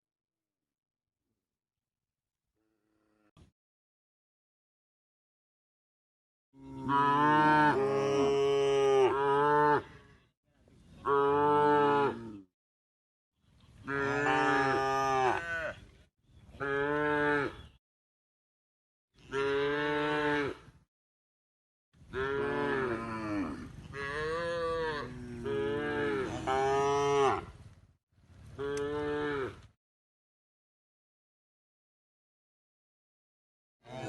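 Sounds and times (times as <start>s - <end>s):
cow mooing: 6.6s - 9.9s, 13.9s - 15.8s, 19.2s - 20.7s, 22.1s - 27.5s, 28.6s - 29.6s.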